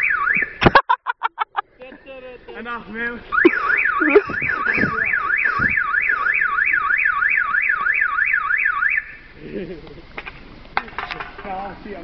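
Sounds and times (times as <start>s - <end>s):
car alarm siren wailing: 0.0s - 0.8s, 3.3s - 9.3s.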